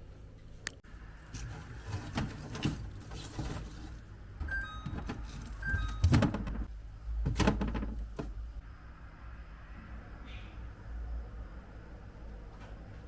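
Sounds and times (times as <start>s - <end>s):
items knocking on fridge shelves: 1.4s - 8.5s.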